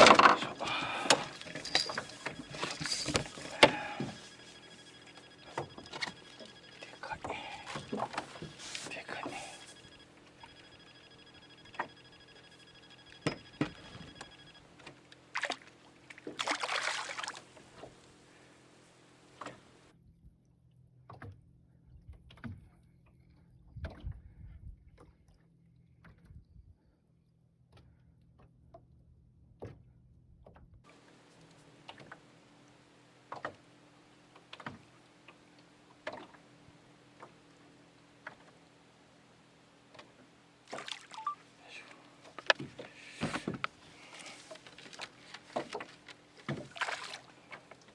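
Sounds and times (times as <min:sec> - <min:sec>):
faint steady hum: 0:00.0 - 0:28.3
water sloshing against boat hull: 0:00.0 - 0:47.9.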